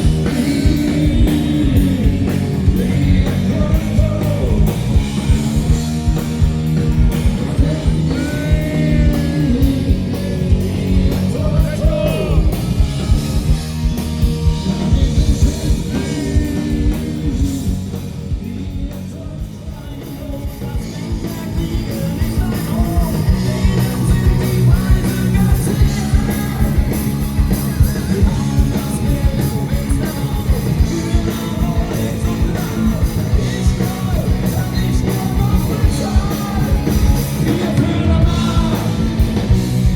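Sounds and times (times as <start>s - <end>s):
person singing: 0.0s - 4.8s, 14.6s - 39.1s
drums keeping a steady beat: 0.0s - 39.9s
live rock band: 0.0s - 39.9s.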